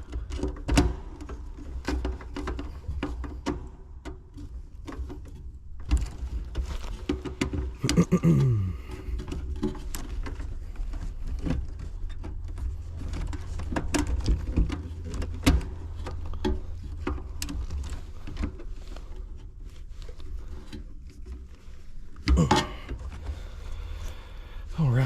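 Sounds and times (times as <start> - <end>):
clatter: 9.0 - 24.1.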